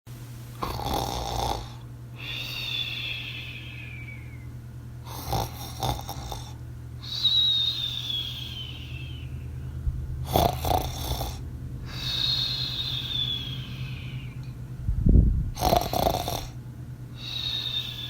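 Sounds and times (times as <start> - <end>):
steady low hum: 0.1 - 18.0
cartoon snoring with falling whistle: 5.1 - 9.3, 10.3 - 14.4, 15.6 - 16.6.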